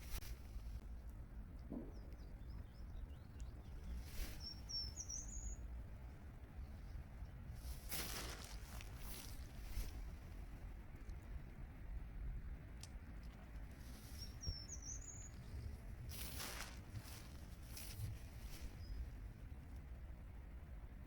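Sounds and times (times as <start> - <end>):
small bird chirping: 1.9 - 10.0, 13.2 - 19.7.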